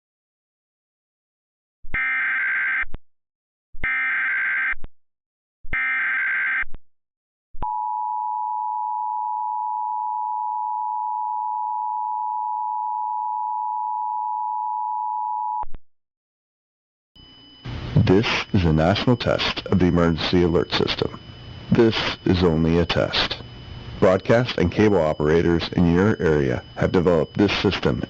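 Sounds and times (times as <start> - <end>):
two-tone attention signal: 17.2 - 23.4, 24.0 - 28.0
alert header data bursts: 17.2 - 28.0.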